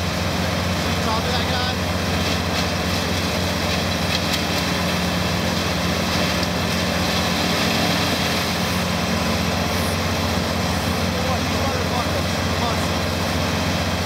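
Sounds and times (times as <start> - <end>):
heavy machine engine humming: 0.0 - 14.0.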